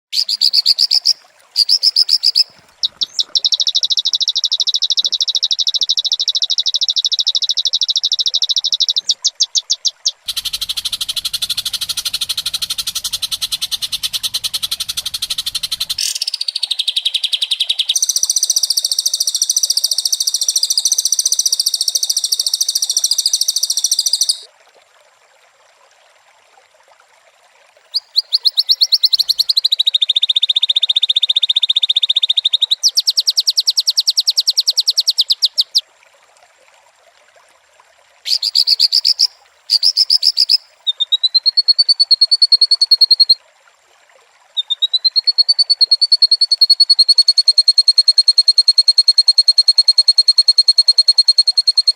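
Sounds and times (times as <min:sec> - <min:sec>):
bird singing fast buzzing trills: 0:00.2 - 0:24.4, 0:27.9 - 0:35.8, 0:38.3 - 0:43.4.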